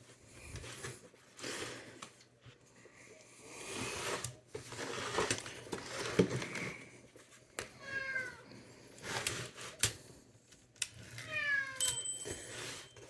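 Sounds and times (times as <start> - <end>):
cat meowing: 7.8 - 8.4, 11.2 - 11.8.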